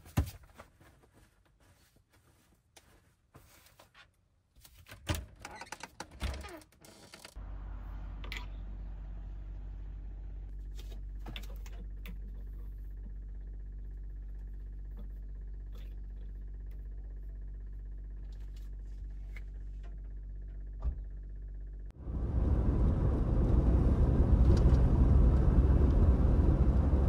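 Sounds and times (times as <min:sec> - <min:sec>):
steady low hum: 0:07.4 - 0:27.0.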